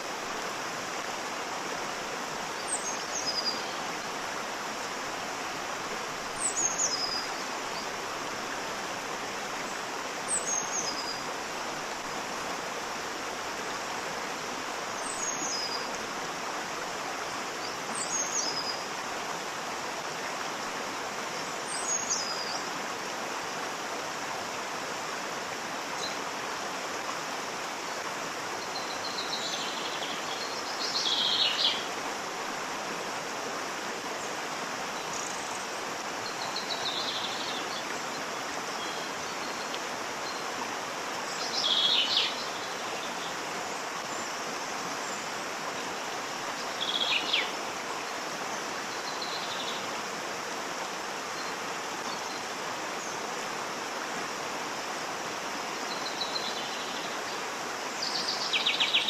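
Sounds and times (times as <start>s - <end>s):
waterfall rushing: 0.0s - 59.0s.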